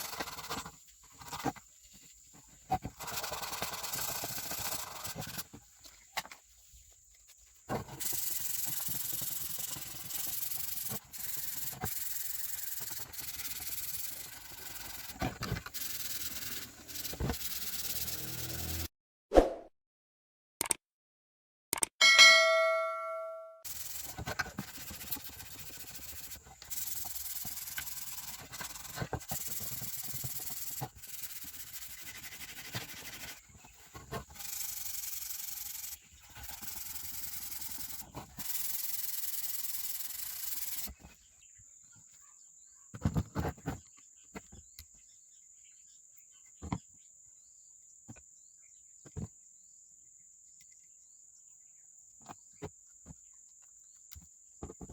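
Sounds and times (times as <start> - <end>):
sanding strokes: 2.9 - 5.5, 7.9 - 18.8, 23.7 - 40.9
faint steady high tone: 22.0 - 23.6
metal part ringing ding: 22.0 - 23.6.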